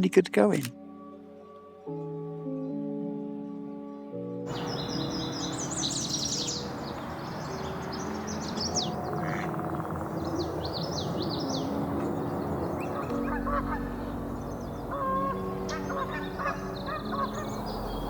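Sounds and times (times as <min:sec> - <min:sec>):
small birds chirping: 0:04.5 - 0:18.0.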